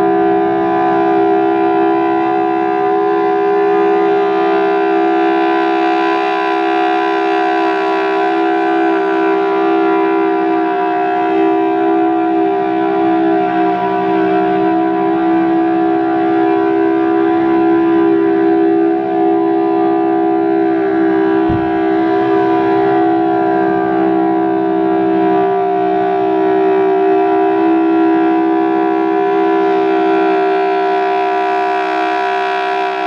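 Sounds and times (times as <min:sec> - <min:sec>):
two-note siren tone: 0:00.0 - 0:33.0
low bump: 0:21.0 - 0:22.9.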